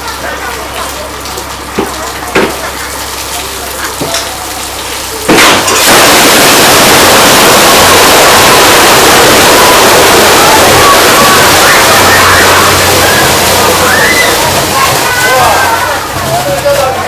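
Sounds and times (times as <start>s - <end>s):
loud rushing hiss: 5.3s - 16.0s.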